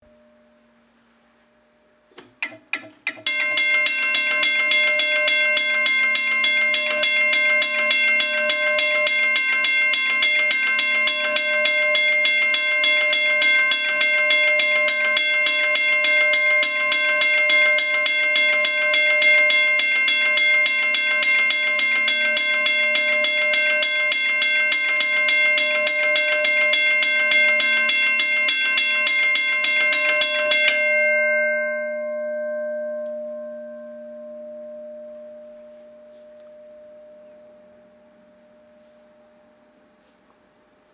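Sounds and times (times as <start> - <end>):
railroad crossing bell ringing: 2.8 - 39.8.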